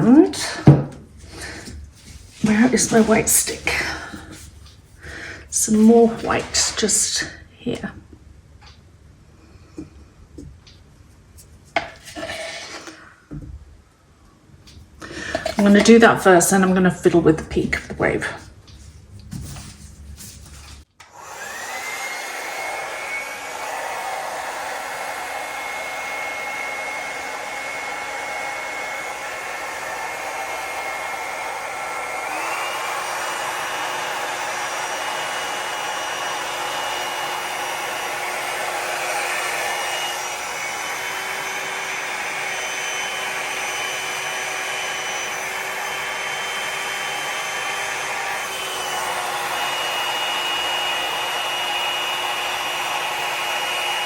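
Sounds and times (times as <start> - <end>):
hair dryer motor whine: 0.0 - 4.5, 5.6 - 7.3, 15.0 - 16.1, 21.0 - 54.0.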